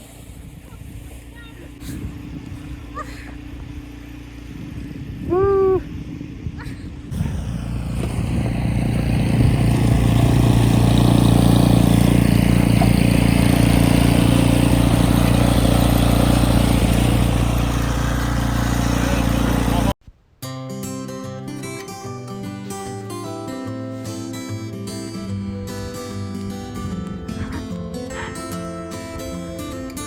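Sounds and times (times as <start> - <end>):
engine humming: 0.4 - 20.0.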